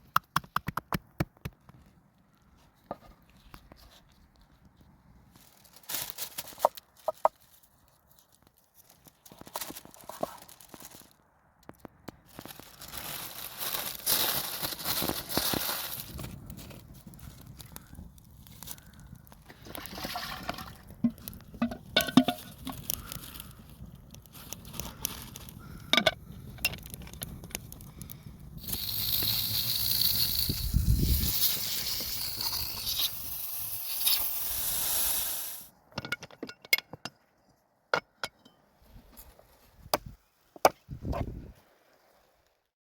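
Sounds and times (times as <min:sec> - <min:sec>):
steady hissing: 0:27.3 - 0:35.7.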